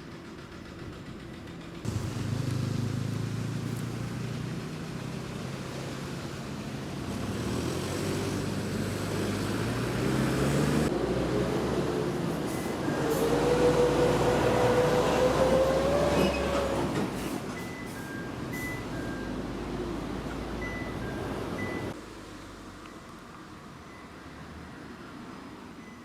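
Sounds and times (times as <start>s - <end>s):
vehicle engine revving: 1.8s - 16.9s.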